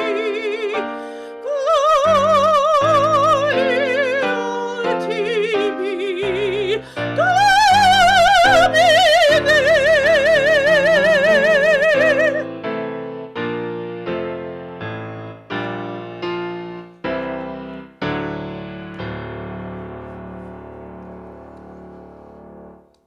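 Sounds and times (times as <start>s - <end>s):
classical singing voice with vibrato: 0.0s - 12.6s
piano chords: 0.0s - 23.0s.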